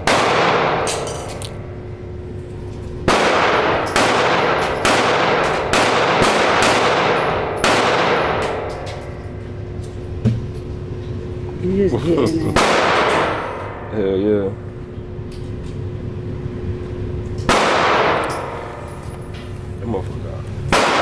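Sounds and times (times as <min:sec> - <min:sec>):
gunshots with reverberation: 0:00.0 - 0:01.3, 0:03.0 - 0:08.8, 0:12.5 - 0:13.9, 0:17.5 - 0:18.6, 0:20.7 - 0:21.0.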